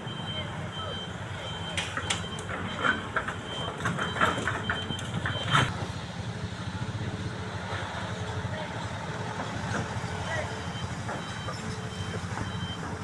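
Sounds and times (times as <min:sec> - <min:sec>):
warning beep: 0:00.0 - 0:05.7, 0:10.6 - 0:12.8
diesel engine running: 0:00.0 - 0:13.0.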